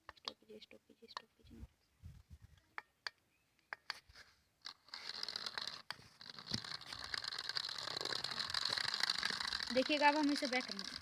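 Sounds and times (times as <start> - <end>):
sharp clicks: 4.6 - 11.0
toy car motor whirring: 4.6 - 11.0.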